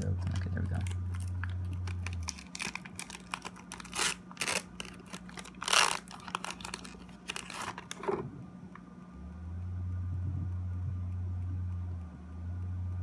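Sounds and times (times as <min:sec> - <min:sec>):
foil wrapper crinkling and tearing: 0:00.0 - 0:08.2
faint steady hum: 0:00.0 - 0:13.0.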